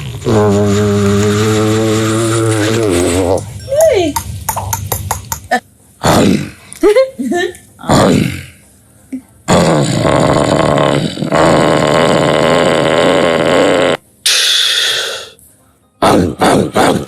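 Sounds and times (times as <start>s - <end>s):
mouth sounds: 0.0s - 3.6s, 7.8s - 15.4s, 16.0s - 17.0s.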